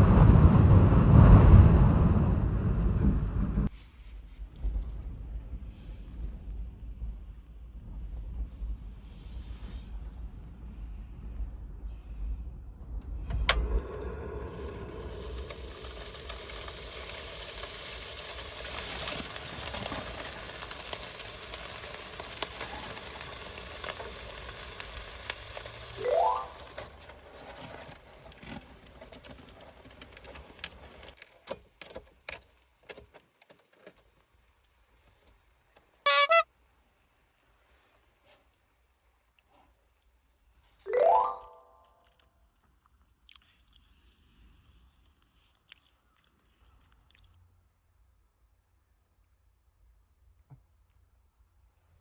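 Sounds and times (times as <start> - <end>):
food sizzling in a hot pan: 13.6 - 27.0
high warbling tone: 26.0 - 26.8, 40.9 - 41.9.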